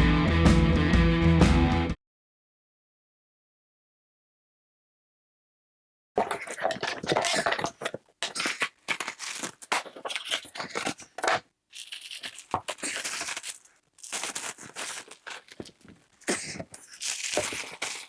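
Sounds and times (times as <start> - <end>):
cardboard and plastic rustling: 6.2 - 18.0.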